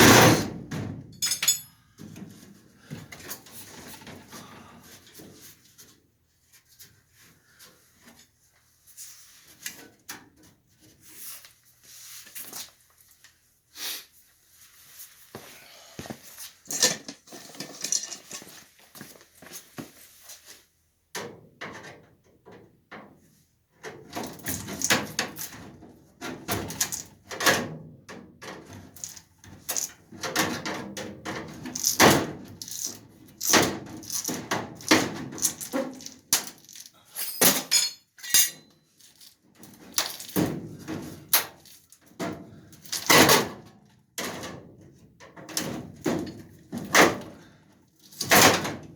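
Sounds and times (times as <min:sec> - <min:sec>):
tools knocking and scraping: 0:00.0 - 0:02.3, 0:16.6 - 0:18.6, 0:28.4 - 0:38.8
clattering: 0:01.2 - 0:01.7.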